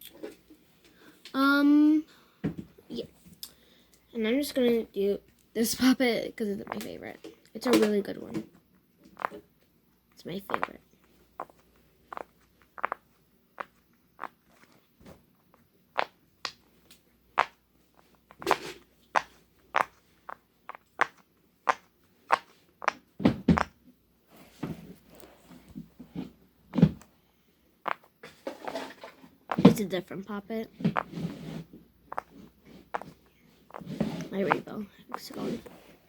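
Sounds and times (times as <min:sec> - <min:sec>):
fidget toy bubbles popping: 0:06.6 - 0:07.0, 0:09.2 - 0:09.4, 0:10.2 - 0:10.8, 0:11.4 - 0:14.4, 0:15.9 - 0:16.6, 0:17.4 - 0:17.6, 0:18.3 - 0:23.8, 0:27.8 - 0:28.1, 0:32.1 - 0:35.7.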